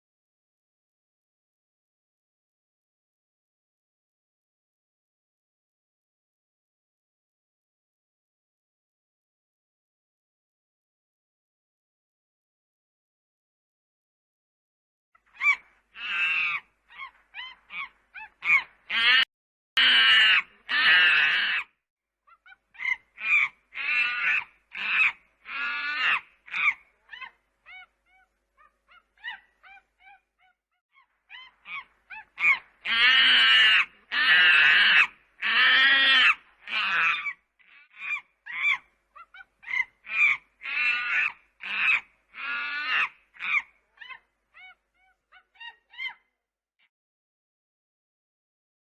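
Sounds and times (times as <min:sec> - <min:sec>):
monkey crying angrily: 0:15.3 - 0:46.3.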